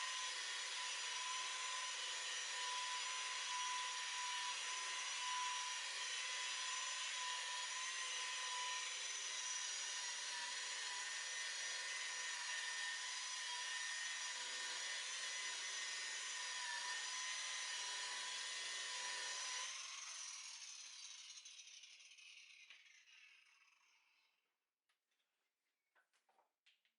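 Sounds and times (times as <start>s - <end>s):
electric rotary buffer whining: 0.0s - 20.6s.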